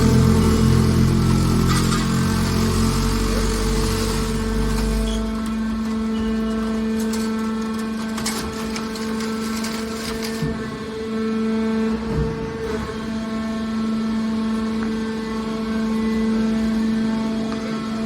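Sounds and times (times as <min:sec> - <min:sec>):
baler motor humming: 0:00.0 - 0:08.1.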